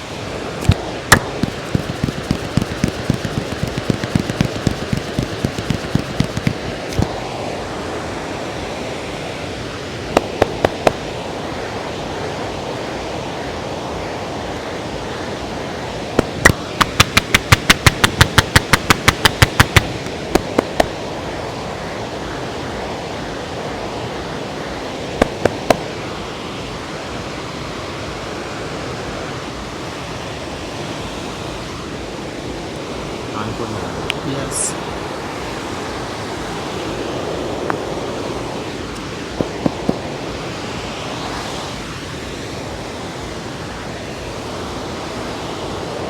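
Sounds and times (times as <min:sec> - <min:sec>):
river flowing: 0:00.0 - 0:17.2
sharp clicks: 0:00.6 - 0:07.1, 0:16.2 - 0:20.9.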